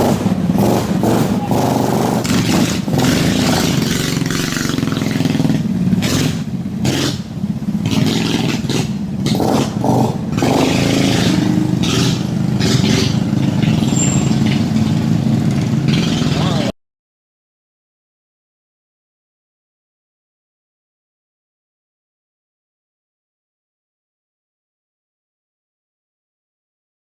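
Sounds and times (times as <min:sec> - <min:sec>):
small engine running: 0:00.0 - 0:16.7.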